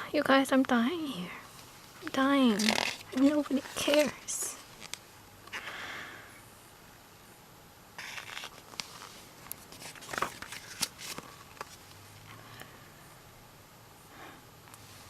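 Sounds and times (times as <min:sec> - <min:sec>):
paper rustling: 0:02.0 - 0:05.0, 0:08.0 - 0:11.8.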